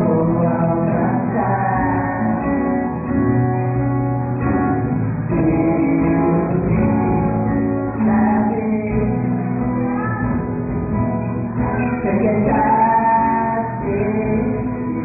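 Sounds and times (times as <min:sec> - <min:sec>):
person singing: 0:00.0 - 0:03.7, 0:05.2 - 0:10.5, 0:11.4 - 0:15.0
guitar: 0:00.0 - 0:15.0
live band playing: 0:00.0 - 0:15.0.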